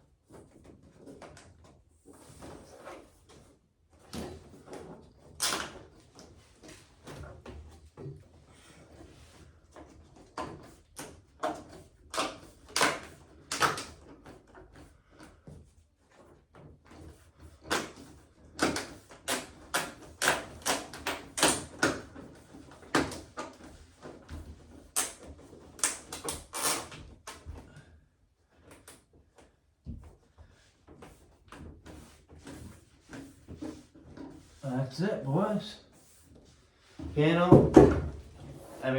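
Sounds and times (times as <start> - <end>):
cabinet panel clacking and knocking: 37.0 - 38.4.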